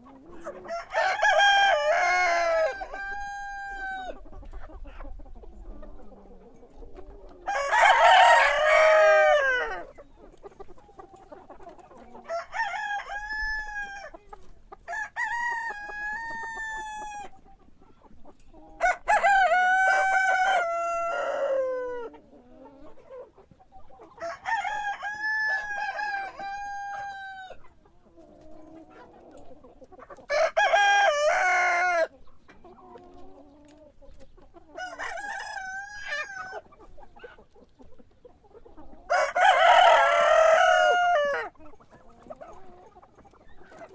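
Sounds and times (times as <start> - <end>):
rooster crowing: 0.7 - 4.1, 7.5 - 9.9, 12.3 - 14.0, 18.8 - 22.1, 24.2 - 27.6, 30.3 - 32.1, 39.1 - 41.5.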